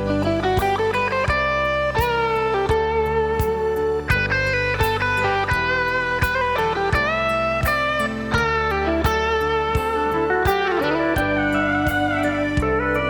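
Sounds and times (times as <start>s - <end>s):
bass: 0.0s - 13.0s
sliding lead guitar: 0.0s - 13.0s
drum beat: 5.5s - 13.0s.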